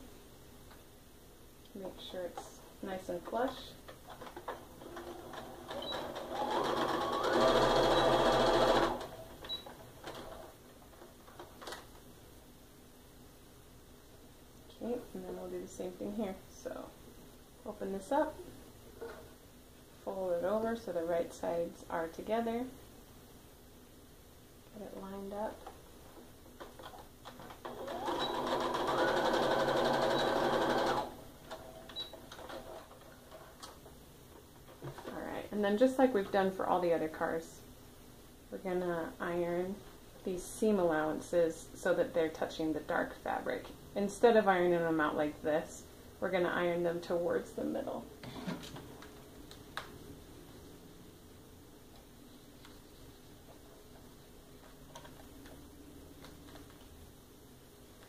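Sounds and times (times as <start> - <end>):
sewing machine stitching: 4.3 - 9.3, 27.6 - 33.0.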